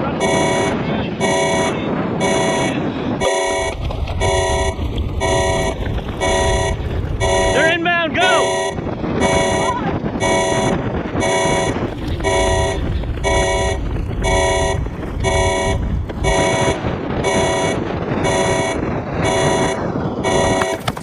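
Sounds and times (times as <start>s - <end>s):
low rumble: 0.0s - 20.8s
alert klaxon blaring: 0.1s - 20.8s.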